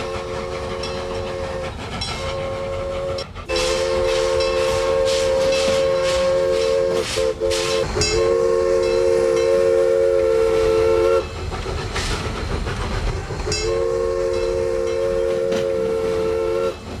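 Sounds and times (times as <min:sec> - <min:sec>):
rail clatter: 0:00.0 - 0:17.0
toy train horn blasts: 0:02.3 - 0:11.3, 0:13.6 - 0:16.8.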